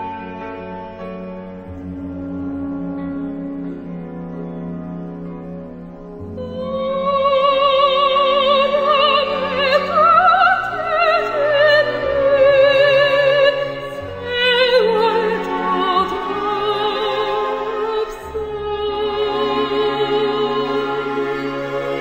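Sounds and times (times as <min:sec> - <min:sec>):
operatic style music: 0:00.0 - 0:22.0.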